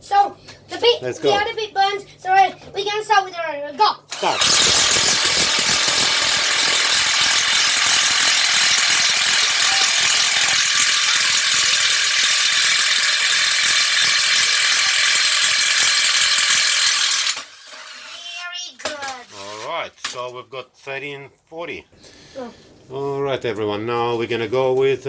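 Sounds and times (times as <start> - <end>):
impact driver hammering: 4.2 - 17.4.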